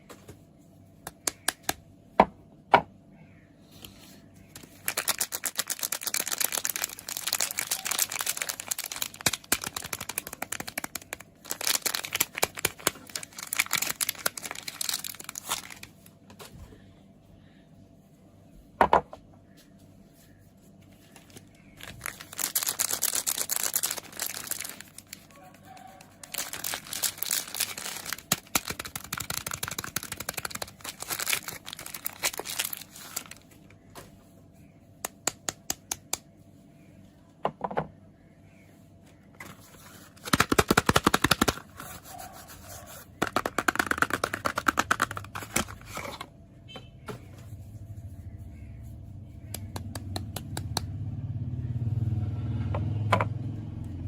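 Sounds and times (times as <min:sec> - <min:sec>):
packaging crinkling: 0:04.5 - 0:16.2, 0:20.9 - 0:33.9, 0:39.4 - 0:46.3.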